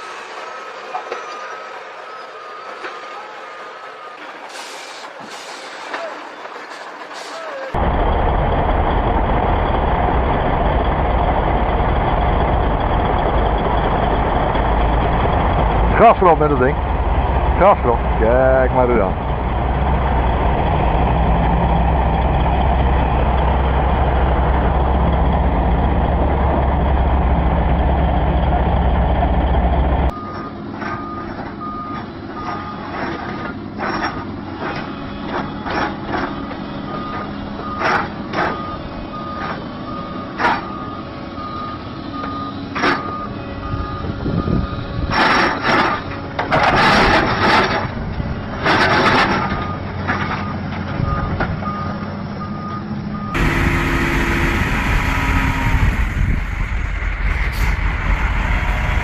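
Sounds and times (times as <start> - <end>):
heavy machine engine running: 0.0 - 59.0
reversing alarm beeping: 30.1 - 32.9, 36.3 - 45.1, 49.5 - 56.9
knocks and clanks: 45.1 - 51.6
loud noisy bursts: 53.4 - 59.0.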